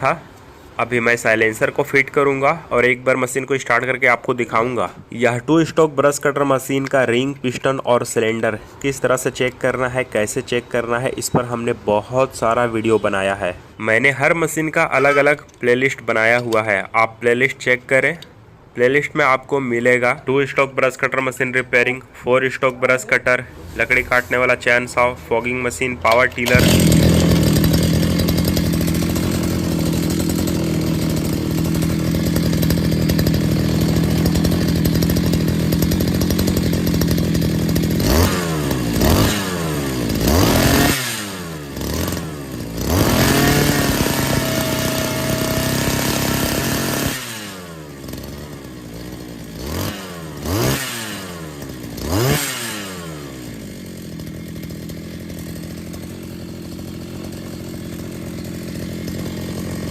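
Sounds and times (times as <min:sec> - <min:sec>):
brush cutter engine revving: 0:14.5 - 0:16.9, 0:23.4 - 0:59.9.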